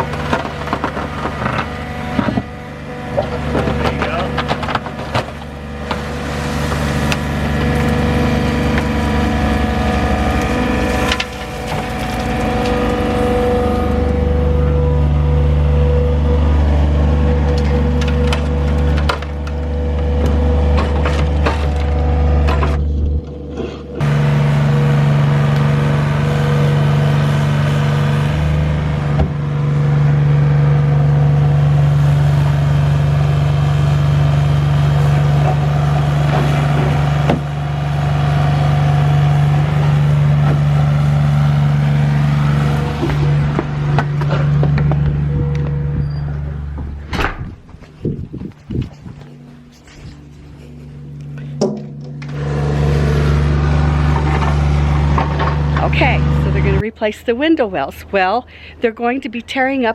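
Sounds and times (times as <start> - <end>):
knocks and crunches of material: 0.0 - 14.2
digging machine engine under load: 0.0 - 59.9.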